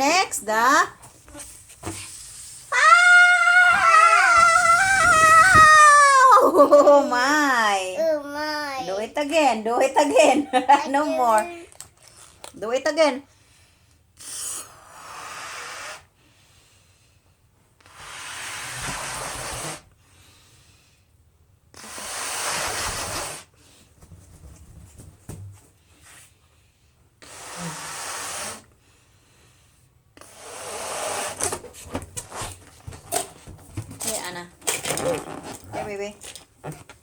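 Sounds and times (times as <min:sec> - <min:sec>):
balloon rubber crackles: 0:01.3 - 0:07.4, 0:34.0 - 0:37.0
person blowing up a balloon: 0:02.1 - 0:06.8, 0:14.2 - 0:16.2, 0:17.8 - 0:20.0, 0:21.7 - 0:23.6, 0:27.2 - 0:28.8, 0:30.2 - 0:31.6.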